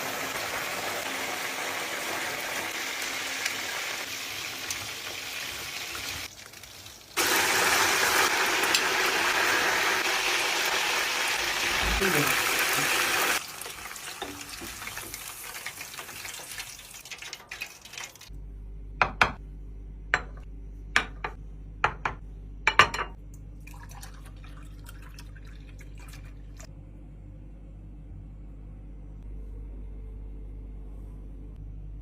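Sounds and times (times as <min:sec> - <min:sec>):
low steady hum: 0:18.2 - 0:32.0.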